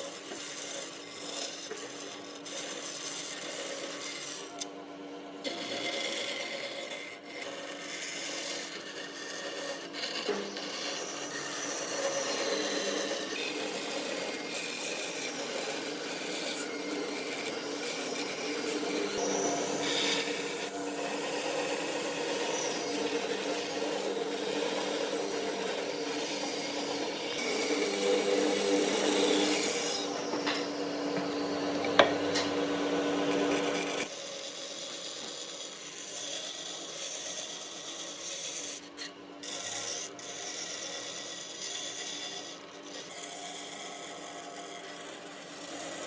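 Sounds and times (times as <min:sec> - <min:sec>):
tool scraping across wood: 0:05.5 - 0:34.1.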